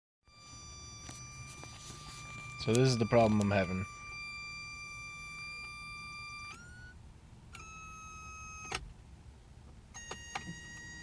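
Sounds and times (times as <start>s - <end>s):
electric fuel pump whining: 0.3s - 8.9s.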